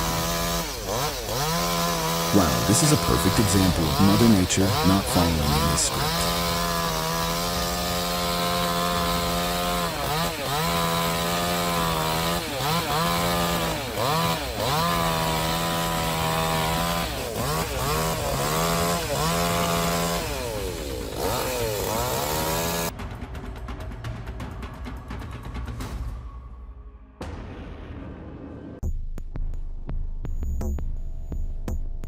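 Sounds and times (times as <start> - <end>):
chainsaw running at high revs: 0.0 - 22.9.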